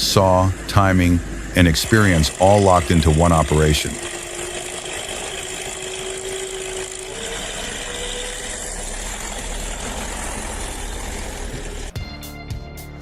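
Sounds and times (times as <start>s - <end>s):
engine running: 0.0s - 12.0s.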